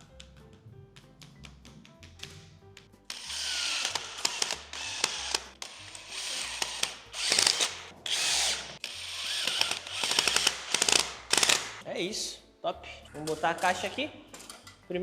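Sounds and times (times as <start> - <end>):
power drill bursts: 3.1 - 11.8.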